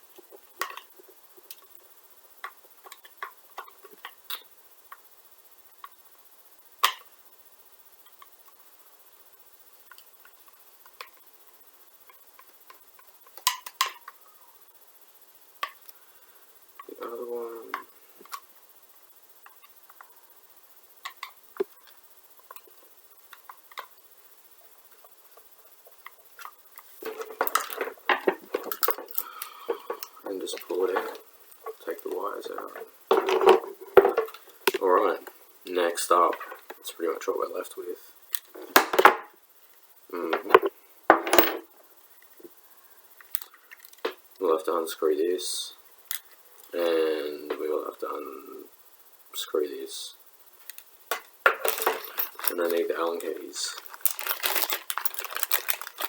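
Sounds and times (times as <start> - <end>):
clatter of plastic parts: 26.0 - 35.4, 38.3 - 39.3, 40.3 - 41.7, 43.2 - 44.2, 50.6 - 56.0
screwdriver clicking on small screws: 53.8 - 56.0.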